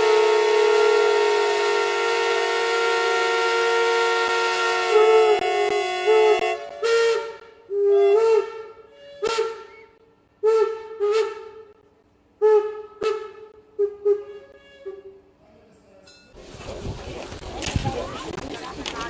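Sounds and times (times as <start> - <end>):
steam locomotive whistle blasts: 0.0 - 11.7, 12.4 - 15.3.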